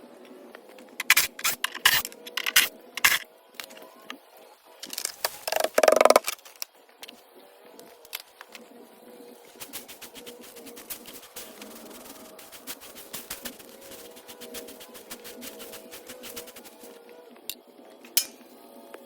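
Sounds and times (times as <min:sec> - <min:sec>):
rasping metal scrape: 0:01.0 - 0:03.2.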